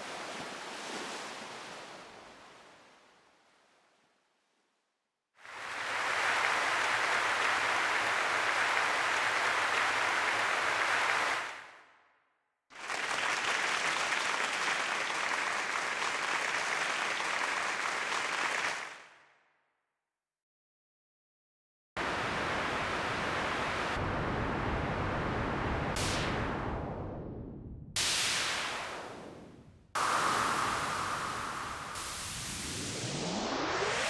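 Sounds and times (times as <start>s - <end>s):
synthesized applause: 30.0s - 34.0s.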